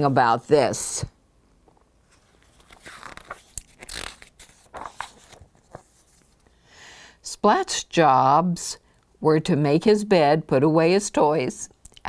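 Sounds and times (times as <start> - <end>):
book pages turning: 1.7 - 6.4.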